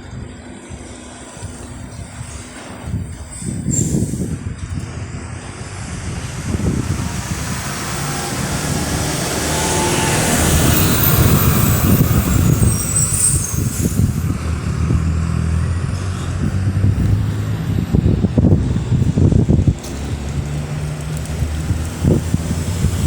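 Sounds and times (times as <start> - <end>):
wind buffeting microphone: 0.0 - 23.0
electric fan motor hum: 4.8 - 12.7.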